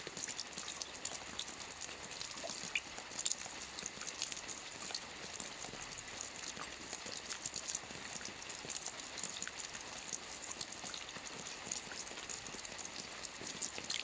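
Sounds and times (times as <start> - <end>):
raindrops clicking on surface: 0.0 - 14.0.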